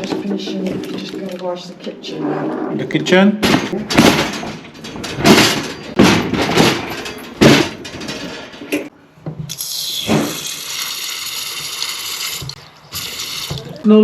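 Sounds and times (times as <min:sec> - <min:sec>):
loud knocks and clunks: 0:03.4 - 0:09.5
water running from a faucet: 0:09.5 - 0:13.8.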